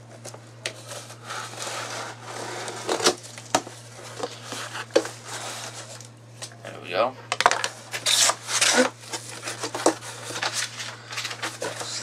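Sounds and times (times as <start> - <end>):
steady low hum: 0.0 - 12.0
cardboard box scraping and rustling: 0.8 - 3.2, 4.0 - 6.0.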